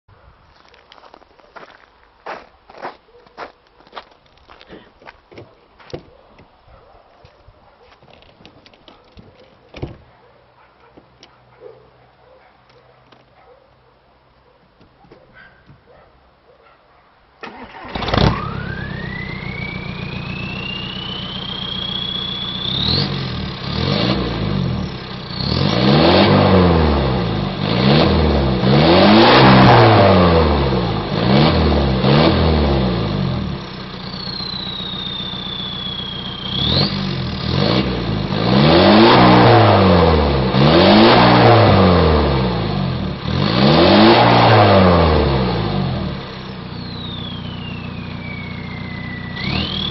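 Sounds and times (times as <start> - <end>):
diesel engine starting and revving: 17.4 - 49.9
turbo whistle: 18.4 - 23.3, 34.0 - 37.1, 46.7 - 49.9.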